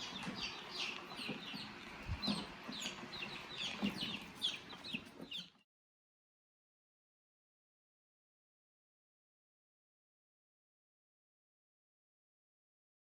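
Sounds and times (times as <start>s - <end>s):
chickens clucking and chirping: 0.0s - 5.6s.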